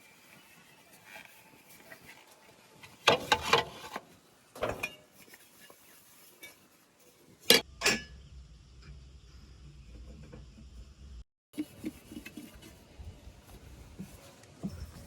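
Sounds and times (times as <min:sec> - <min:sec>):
low steady hum: 0:07.6 - 0:15.0.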